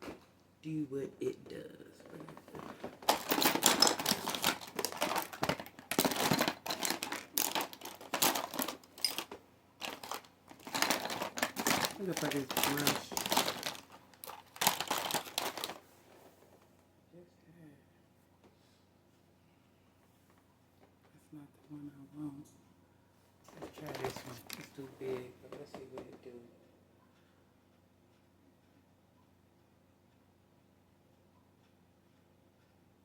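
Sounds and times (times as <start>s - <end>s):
makeup items clattering: 2.0s - 15.8s, 23.5s - 25.9s
plastic crinkling and rustling: 2.0s - 16.0s, 23.4s - 26.0s.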